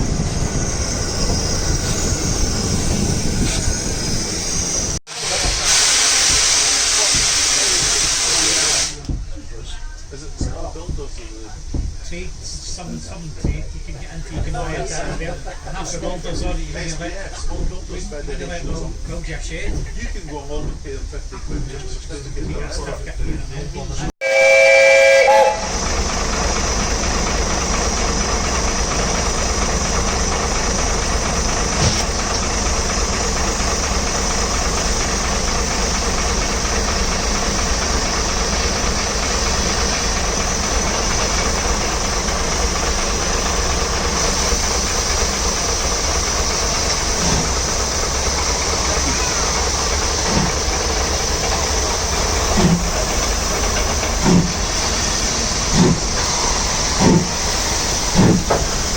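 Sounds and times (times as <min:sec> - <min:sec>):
steam train running: 0:00.0 - 0:58.9
steam locomotive whistle: 0:24.2 - 0:25.8.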